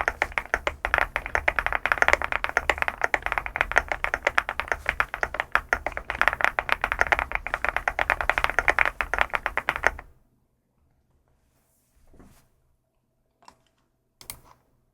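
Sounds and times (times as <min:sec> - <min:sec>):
fast typing on mechanical keyboard: 0:00.0 - 0:10.1.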